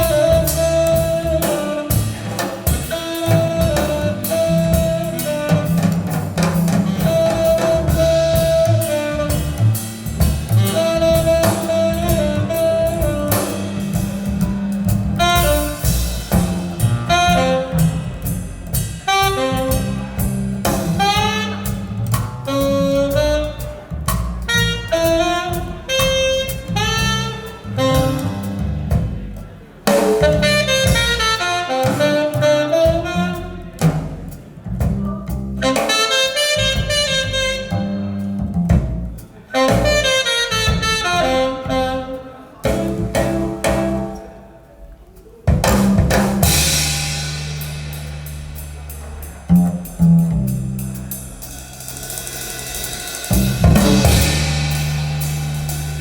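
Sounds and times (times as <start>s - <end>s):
saxophone lead: 0.0s - 6.0s, 6.6s - 18.4s, 19.0s - 29.2s, 30.2s - 33.8s, 35.6s - 38.2s, 39.5s - 45.2s
drum kit: 0.0s - 56.0s.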